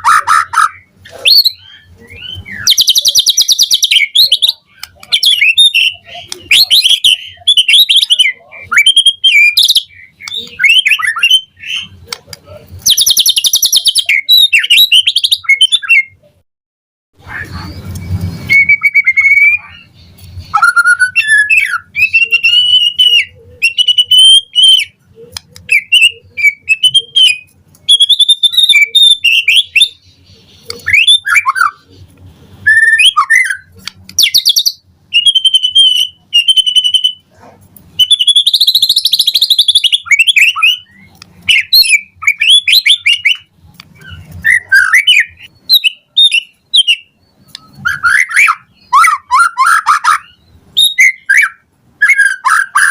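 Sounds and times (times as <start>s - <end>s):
bird singing whistled phrases: 0.1s - 12.0s, 12.9s - 16.2s, 17.5s - 25.0s, 25.7s - 30.0s, 30.8s - 31.8s, 32.6s - 37.2s, 38.0s - 52.9s.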